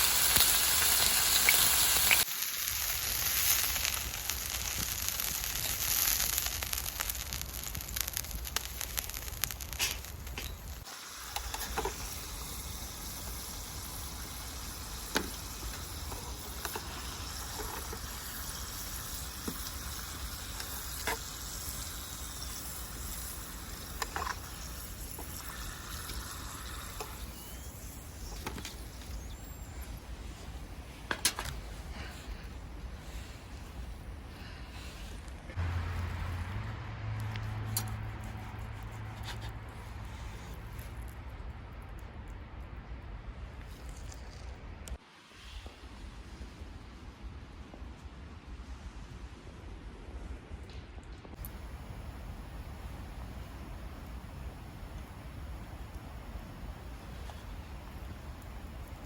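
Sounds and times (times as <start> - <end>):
steak sizzling on griddle: 0.0 - 29.8.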